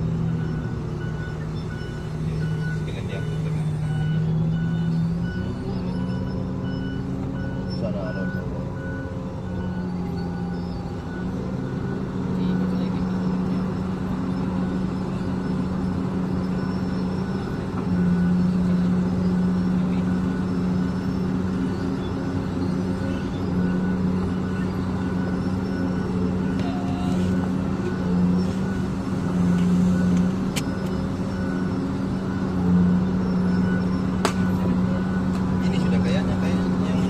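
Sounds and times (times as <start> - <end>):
excavator engine hum: 0.0 - 37.0.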